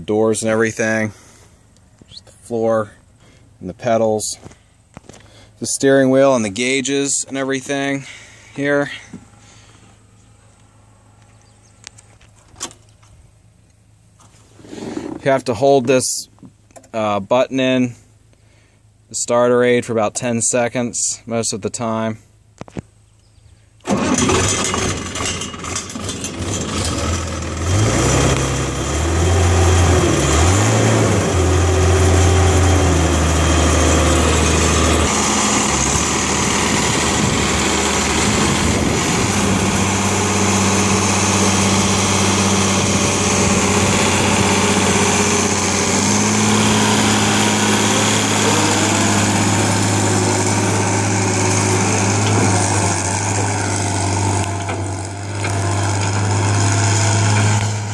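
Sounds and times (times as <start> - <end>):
engine cranking on starter: 23.8 - 31.6
diesel engine revving and idling: 23.9 - 57.9.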